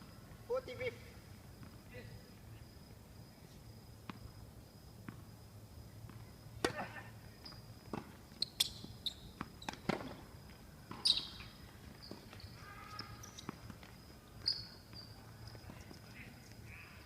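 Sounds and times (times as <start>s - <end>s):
tennis ball hits and bounces: 6.0s - 6.9s, 7.9s - 10.2s.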